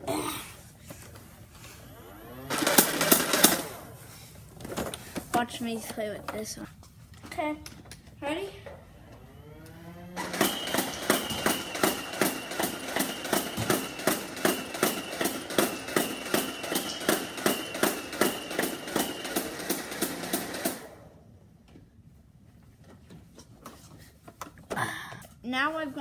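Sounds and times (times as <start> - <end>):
toy blaster motor whine: 1.6 - 3.9, 9.0 - 21.1
rapid toy blaster shots: 2.0 - 3.9, 10.1 - 21.1.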